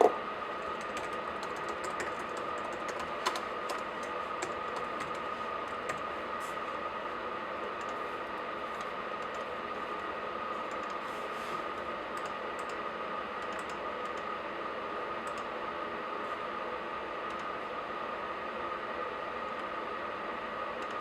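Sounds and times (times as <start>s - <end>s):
thin steady whine: 0.0s - 21.0s
laptop keys tapping: 0.7s - 6.1s, 13.4s - 14.3s.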